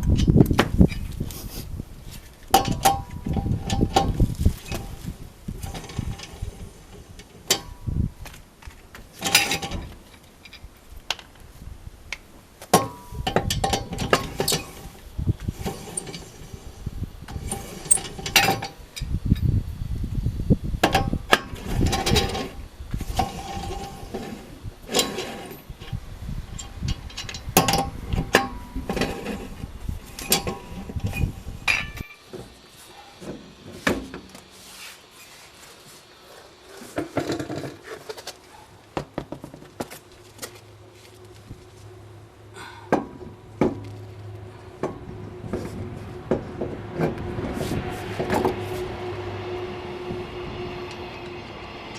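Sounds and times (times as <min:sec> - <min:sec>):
metal tools clinking and clattering: 0:30.2 - 0:32.2.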